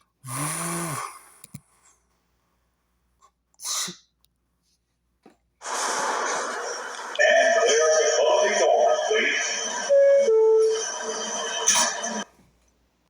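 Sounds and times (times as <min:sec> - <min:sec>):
person sneezing: 0:03.6 - 0:04.1.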